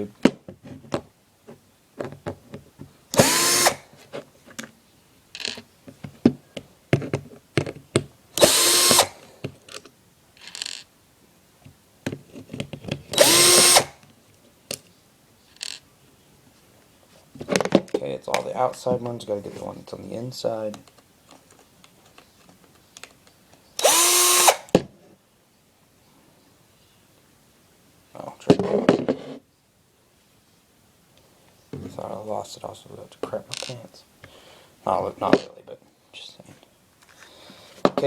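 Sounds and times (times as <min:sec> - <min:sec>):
electric screwdriver whining: 0:03.1 - 0:03.8, 0:08.4 - 0:09.2, 0:13.2 - 0:14.0, 0:23.8 - 0:24.7.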